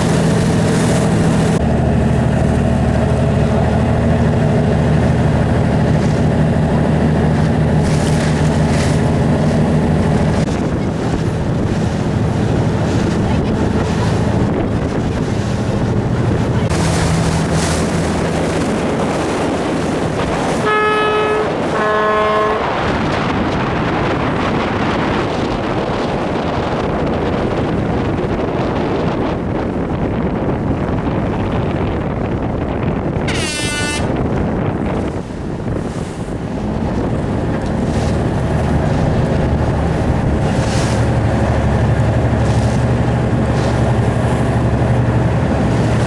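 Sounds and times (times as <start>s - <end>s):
boat engine running: 0.0s - 46.0s
wind buffeting microphone: 0.0s - 46.0s
short horn blasts: 20.5s - 22.9s, 33.2s - 34.2s.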